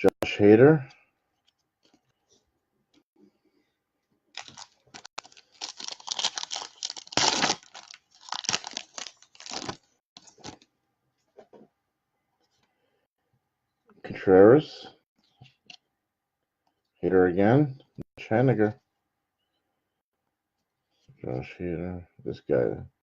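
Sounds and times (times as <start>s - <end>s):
foil wrapper crinkling: 4.4s - 10.6s.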